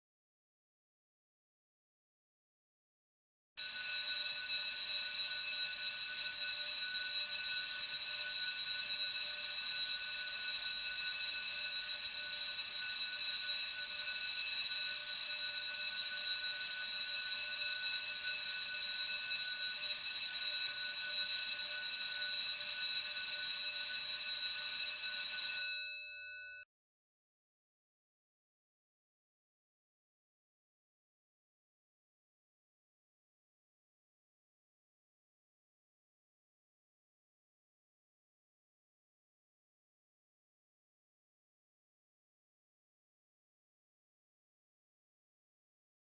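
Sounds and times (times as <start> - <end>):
school bell ringing: 24.7 - 26.3.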